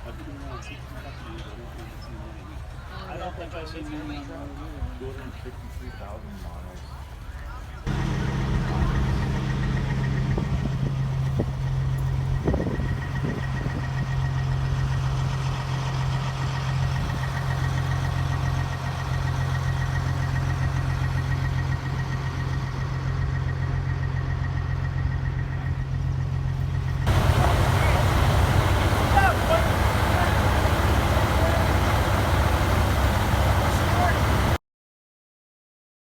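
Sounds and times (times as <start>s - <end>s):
truck engine idling: 7.1s - 34.6s.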